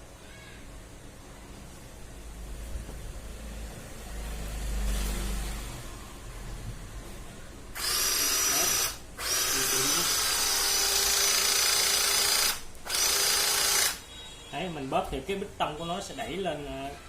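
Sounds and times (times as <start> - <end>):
crimping tool motor whining: 7.8 - 14.0.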